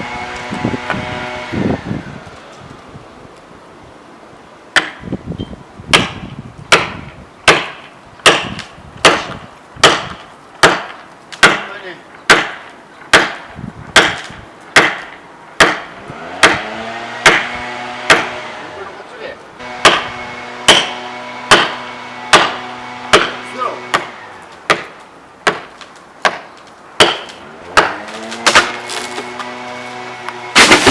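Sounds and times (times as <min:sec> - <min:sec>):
tool striking wood: 0:04.8 - 0:05.1, 0:05.9 - 0:11.7, 0:12.3 - 0:18.4, 0:19.6 - 0:29.5, 0:30.5 - 0:30.9.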